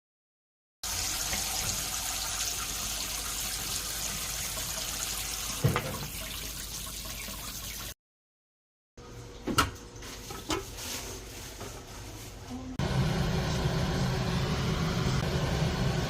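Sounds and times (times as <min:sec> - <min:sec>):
water running into sink: 0:00.8 - 0:08.0.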